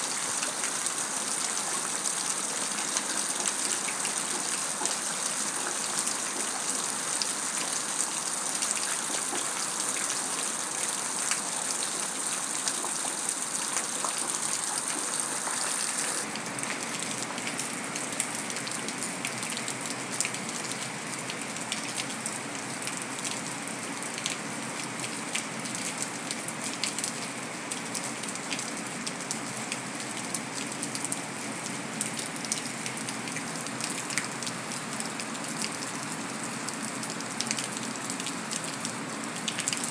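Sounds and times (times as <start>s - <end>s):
heavy rain on concrete: 0.0s - 39.9s.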